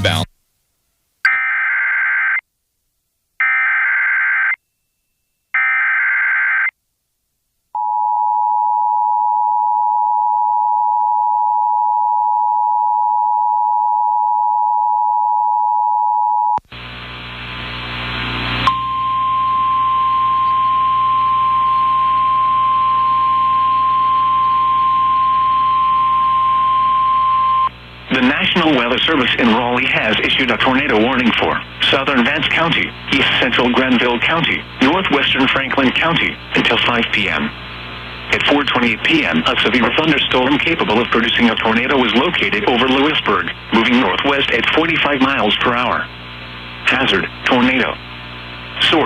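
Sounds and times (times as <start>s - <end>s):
hissing humming background: 16.6s - 49.0s
steady warning alarm tone: 18.7s - 27.7s.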